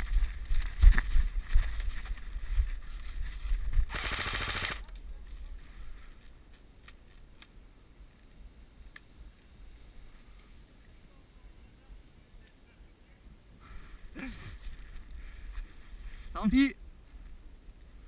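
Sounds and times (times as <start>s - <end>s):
airsoft rifle full-auto burst: 3.9s - 4.9s.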